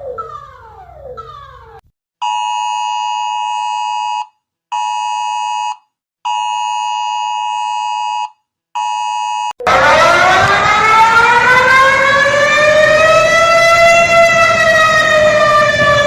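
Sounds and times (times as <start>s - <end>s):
siren wailing upward: 0.0s - 1.8s, 9.6s - 16.0s
pulsing electronic alarm tone: 8.8s - 16.0s.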